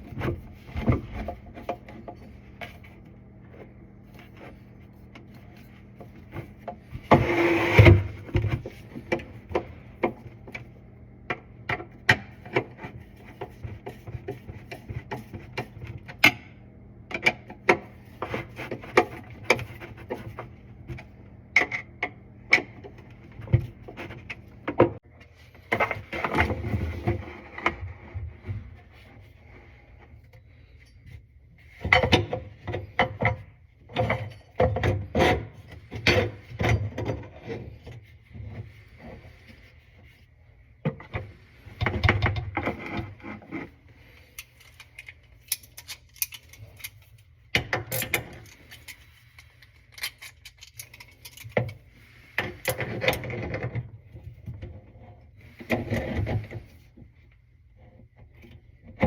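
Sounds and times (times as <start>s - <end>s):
knocking and clicking of tools: 40.8s - 54.8s.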